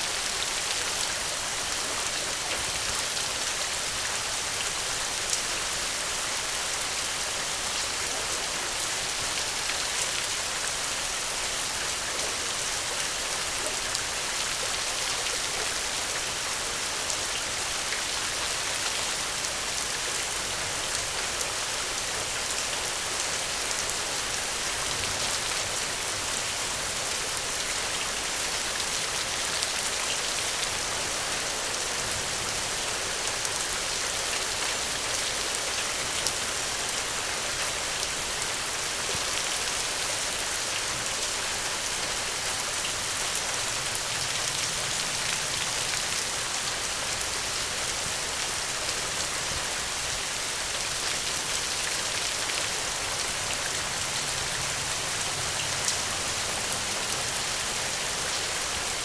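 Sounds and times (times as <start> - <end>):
rain falling on a surface: 0.0 - 59.0.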